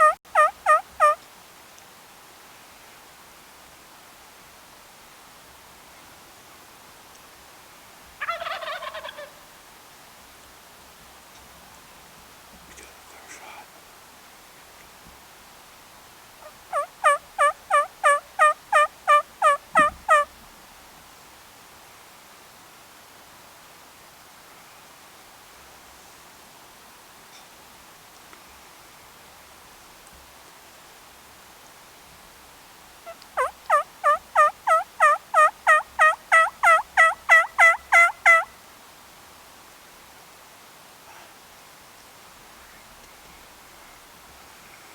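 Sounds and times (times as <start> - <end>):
turkey calling: 0.0 - 1.2, 8.2 - 9.4, 16.4 - 20.3, 33.0 - 38.5.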